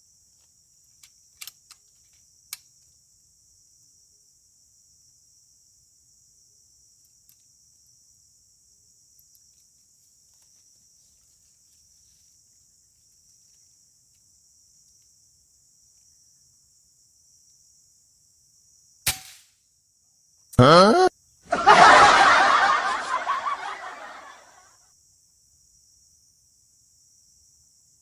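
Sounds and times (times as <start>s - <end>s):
air rifle shot: 19.1s - 19.4s
crickets chirping: 21.5s - 24.4s.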